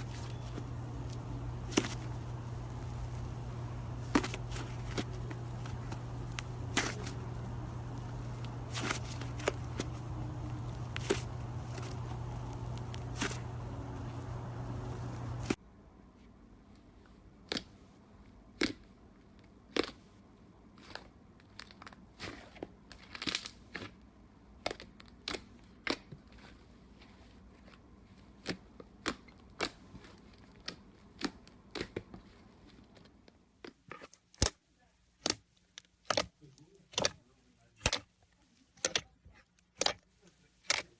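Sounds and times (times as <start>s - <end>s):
slime popping and crackling: 0.0s - 15.6s
steady low hum: 0.0s - 16.0s.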